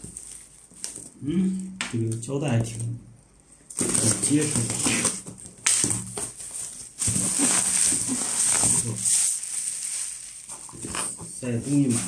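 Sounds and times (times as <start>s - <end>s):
packing tape tearing: 3.7s - 11.2s.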